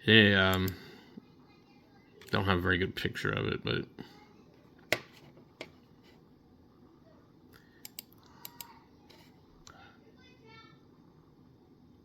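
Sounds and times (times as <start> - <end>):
computer mouse clicking: 7.8 - 8.7.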